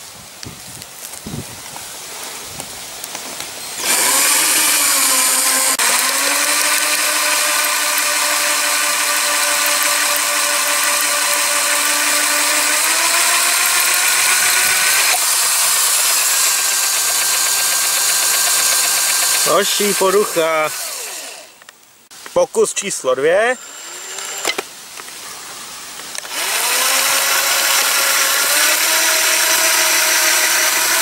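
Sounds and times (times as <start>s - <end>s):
small electric motor whine: 3.4s - 21.6s, 23.6s - 25.1s, 26.1s - 31.0s.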